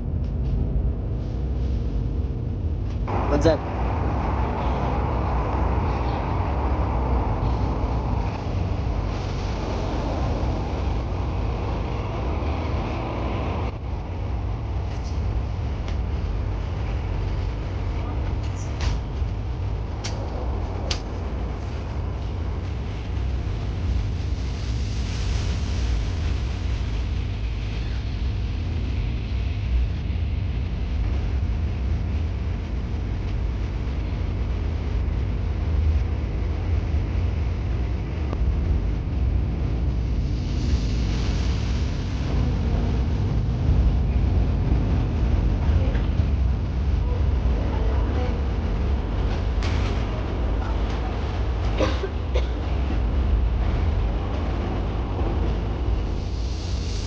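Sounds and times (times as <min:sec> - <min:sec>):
passenger train rumbling: 0:00.0 - 0:57.0.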